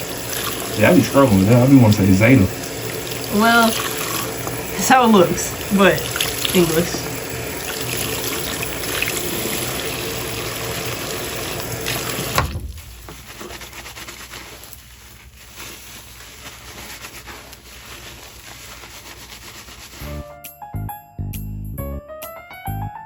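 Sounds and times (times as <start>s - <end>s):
running water: 0.0s - 20.1s
faint rubbing and handling: 11.8s - 20.2s
piano music: 20.0s - 23.0s.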